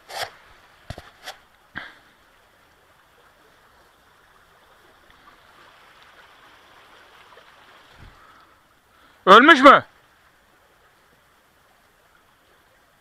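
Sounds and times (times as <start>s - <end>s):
faint outdoor hiss: 0.0s - 13.0s.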